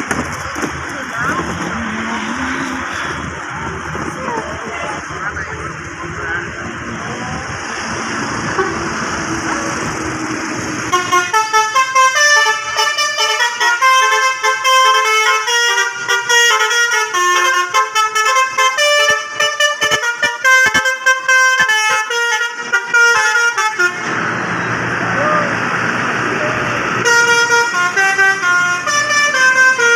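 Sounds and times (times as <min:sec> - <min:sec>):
steady background noise: 0:00.0 - 0:11.0
bus horn playing a melody: 0:08.4 - 0:09.3, 0:10.8 - 0:24.3, 0:27.0 - 0:29.9.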